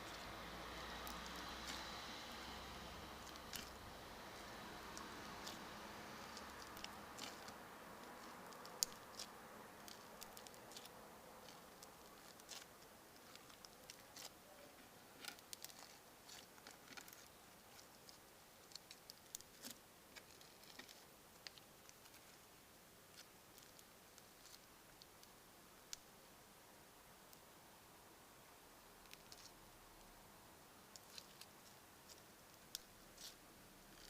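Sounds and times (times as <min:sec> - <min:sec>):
faint passing traffic hum: 0:00.0 - 0:34.0
crunchy slime popping and crunching: 0:03.2 - 0:03.8, 0:04.4 - 0:14.4, 0:15.2 - 0:22.2, 0:32.1 - 0:34.0.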